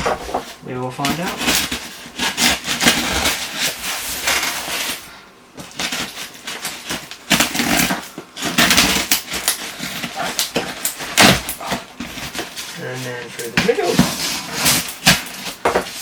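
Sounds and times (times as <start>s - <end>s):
packaging crackling and rustling: 0.0s - 16.0s.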